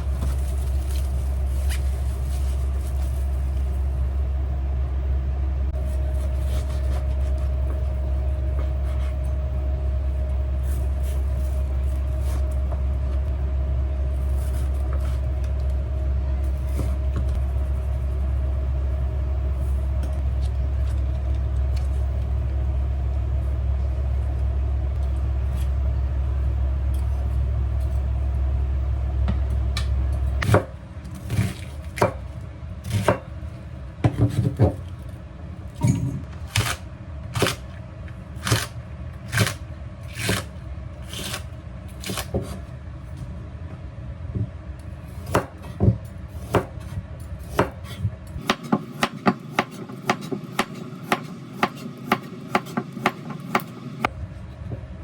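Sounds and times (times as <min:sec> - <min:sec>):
steady low rumble: 0:00.0 - 0:42.0, 0:54.0 - 0:55.0
knife chopping on cutting board: 0:30.4 - 0:32.2, 0:45.2 - 0:53.7.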